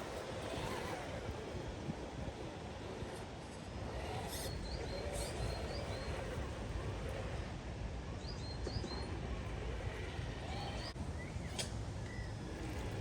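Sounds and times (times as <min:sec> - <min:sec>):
small birds chirping: 0:04.0 - 0:07.2, 0:08.2 - 0:12.4.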